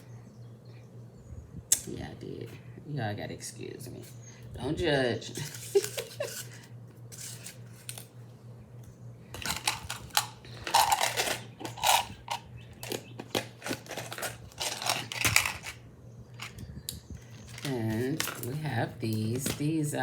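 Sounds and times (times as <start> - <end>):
metal charms clinking: 9.4 - 12.4.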